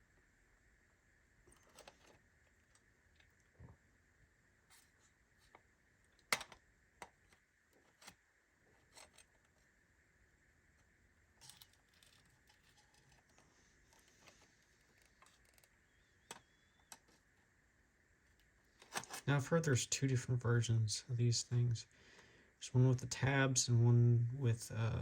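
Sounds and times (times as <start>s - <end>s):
small metal parts clicking: 11.4s - 13.4s.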